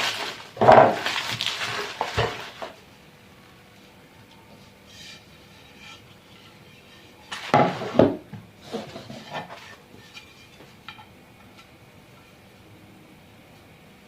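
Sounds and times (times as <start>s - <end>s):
household objects clattering: 0.0s - 2.8s, 7.3s - 9.8s.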